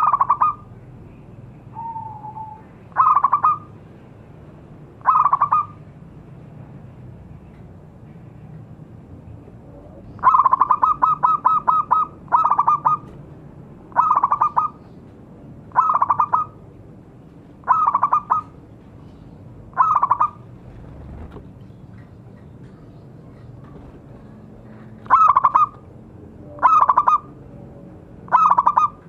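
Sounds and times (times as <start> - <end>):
dove cooing: 1.8 - 3.7, 5.0 - 5.8, 9.7 - 13.1, 13.9 - 14.8, 17.6 - 18.6, 19.7 - 21.3, 26.4 - 27.3.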